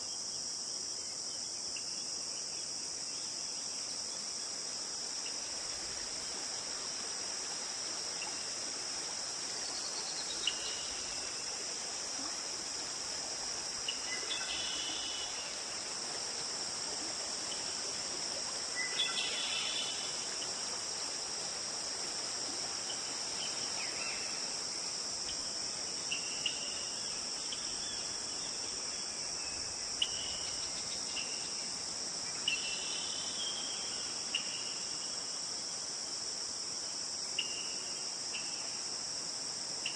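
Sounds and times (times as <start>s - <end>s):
insects chorus: 0.0s - 39.9s.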